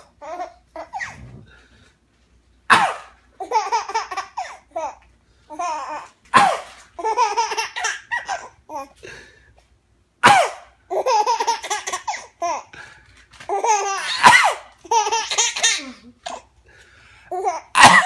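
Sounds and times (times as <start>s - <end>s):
baby laughing: 0.0s - 1.2s, 3.4s - 9.0s, 10.3s - 12.7s, 13.4s - 16.5s
man coughing: 2.7s - 3.2s, 10.2s - 10.7s, 17.8s - 18.0s.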